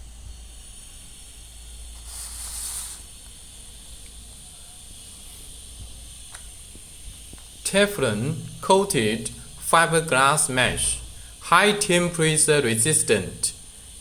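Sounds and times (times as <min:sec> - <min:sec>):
short burst of hiss: 0:00.6 - 0:06.9
low machine hum: 0:03.2 - 0:14.0.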